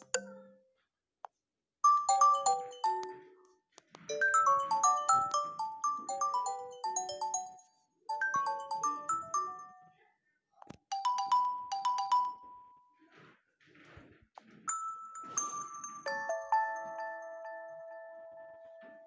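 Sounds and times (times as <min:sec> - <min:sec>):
phone ringtone tunes: 0:01.8 - 0:03.4, 0:04.1 - 0:09.9, 0:10.9 - 0:12.7, 0:14.7 - 0:19.0.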